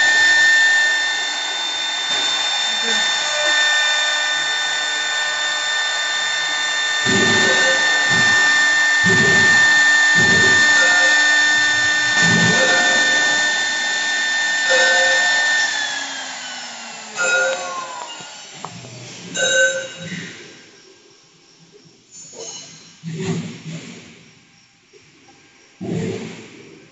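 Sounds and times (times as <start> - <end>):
rough wood cutting noise: 0.0 - 19.3
lathe motor whine: 0.0 - 20.9.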